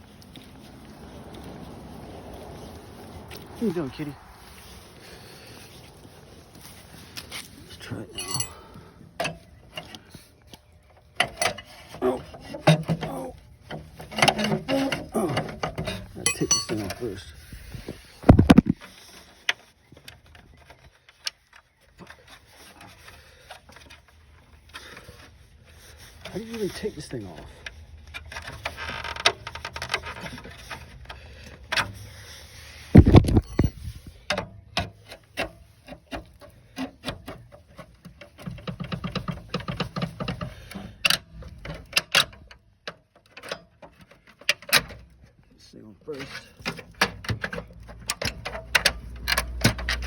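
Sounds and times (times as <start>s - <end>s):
tools clicking and tapping: 8.2s - 8.6s, 15.4s - 17.0s, 46.6s - 50.0s
metal tools clicking and knocking: 8.2s - 9.9s, 14.1s - 17.0s.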